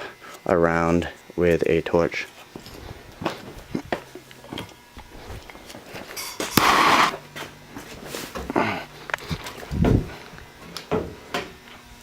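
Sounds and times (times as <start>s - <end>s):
torch igniting with hiss: 6.4s - 7.2s.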